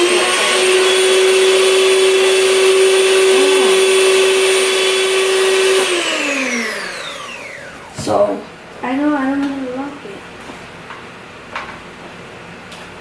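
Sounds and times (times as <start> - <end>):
electric mixer motor whining: 0.0 - 8.3.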